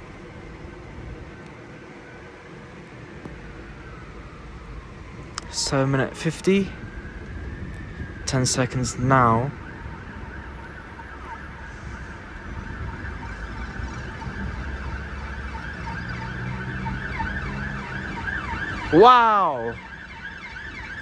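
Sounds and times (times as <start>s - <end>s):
fire truck siren wailing: 0.0s - 21.0s
person exclaiming: 19.0s - 19.8s.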